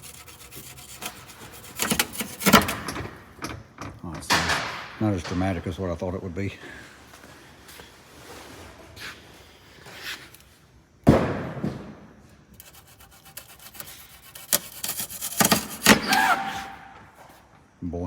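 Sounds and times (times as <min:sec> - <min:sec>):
straps rubbing and scraping: 0:00.0 - 0:03.0, 0:07.2 - 0:10.7, 0:12.6 - 0:17.5
loud knocks: 0:11.0 - 0:12.0.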